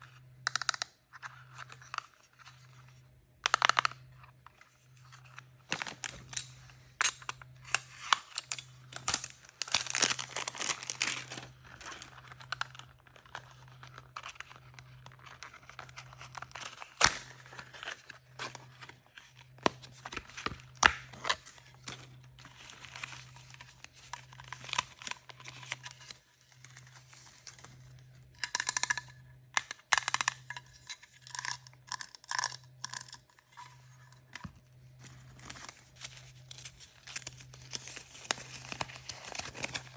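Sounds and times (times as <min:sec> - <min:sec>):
packaging tearing and crinkling: 0:05.7 - 0:18.9, 0:35.0 - 0:39.9.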